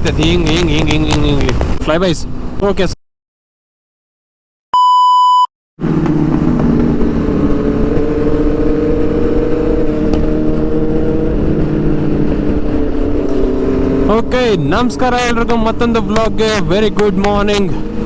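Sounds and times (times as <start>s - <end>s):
road noise: 0.0s - 3.0s, 5.8s - 18.0s
short electronic beep: 4.7s - 5.5s
motorcycle engine running: 5.8s - 18.0s.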